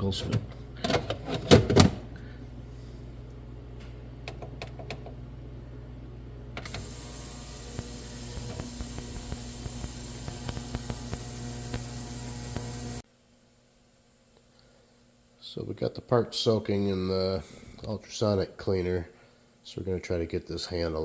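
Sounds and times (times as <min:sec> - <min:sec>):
electrical hum: 0:02.0 - 0:21.0
crackling ticks: 0:06.6 - 0:13.0
ultrasonic cleaner hiss: 0:06.6 - 0:13.0.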